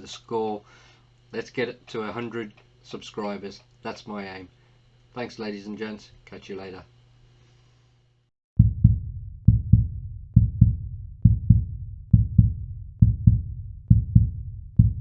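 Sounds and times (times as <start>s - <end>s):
heartbeat thumps: 8.6s - 15.0s.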